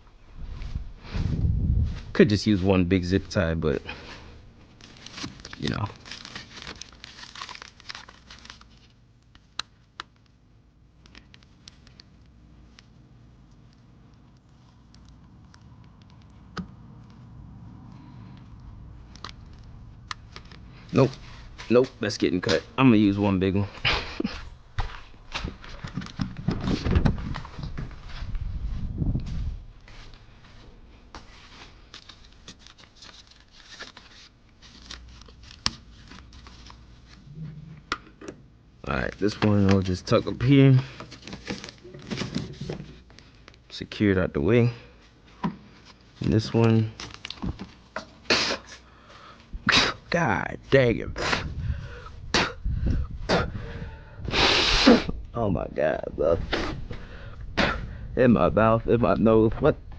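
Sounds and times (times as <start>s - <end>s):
plastic rustle: 3.9s - 10.4s, 31.2s - 37.3s, 38.9s - 43.6s
plastic parts clicking and rustling: 4.8s - 10.4s, 25.3s - 27.8s.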